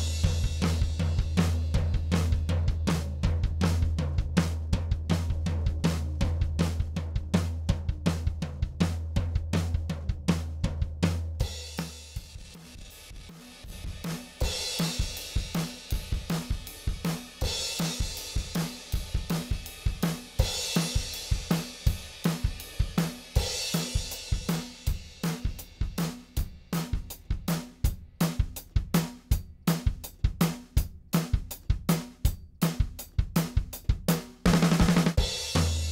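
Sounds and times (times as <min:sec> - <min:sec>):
drum kit groove: 0:00.0 - 0:35.9
low held bass tone: 0:03.3 - 0:10.7.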